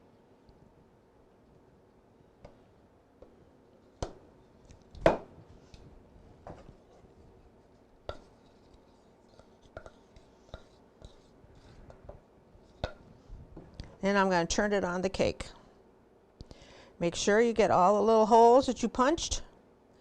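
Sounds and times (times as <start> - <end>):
glaze being scraped: 8.1 - 12.0.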